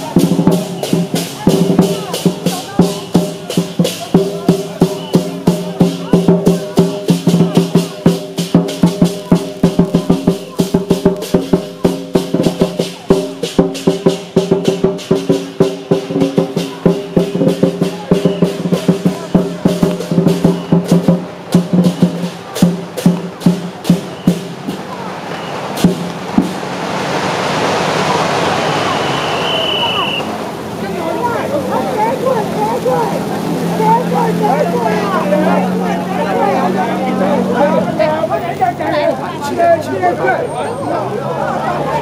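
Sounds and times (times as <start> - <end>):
clattering percussion: 0.0 - 25.0.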